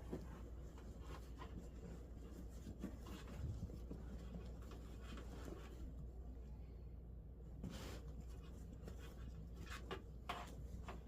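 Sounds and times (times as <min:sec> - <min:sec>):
fabric rustling and scraping: 0:00.0 - 0:06.1
low steady hum: 0:00.0 - 0:11.0.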